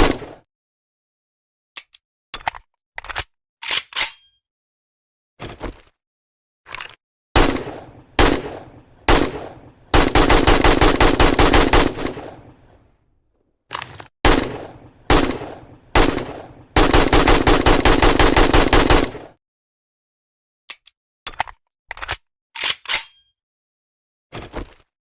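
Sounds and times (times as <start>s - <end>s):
rifle gunshots and automatic fire: 0.0s - 0.4s, 7.4s - 12.8s, 14.3s - 19.4s.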